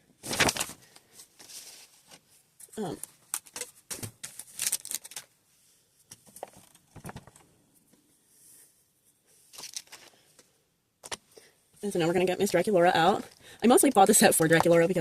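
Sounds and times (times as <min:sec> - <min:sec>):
plastic toy parts clicking and rustling: 0:03.0 - 0:05.3, 0:09.6 - 0:10.1.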